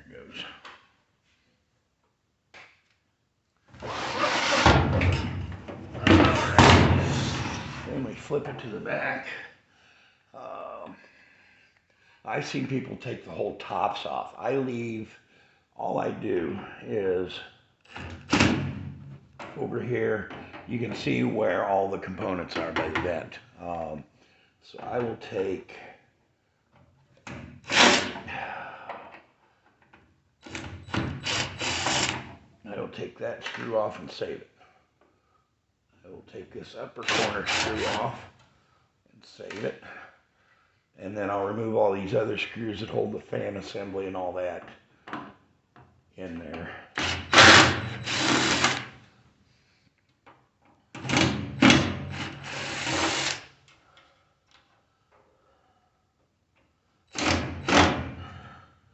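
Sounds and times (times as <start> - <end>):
cordless drill motor running: 31.2 - 32.2, 47.0 - 48.8, 52.1 - 53.4.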